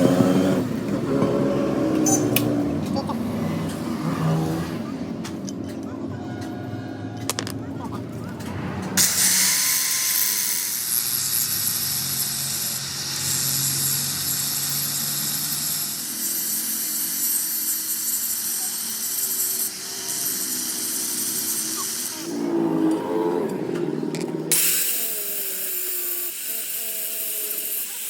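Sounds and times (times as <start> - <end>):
power tool grinding steel: 9.0 - 28.0.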